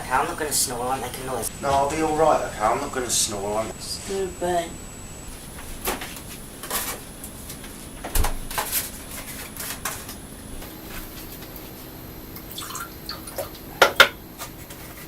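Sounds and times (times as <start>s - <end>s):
kitchen cupboard doors opening and shutting: 8.0s - 8.5s.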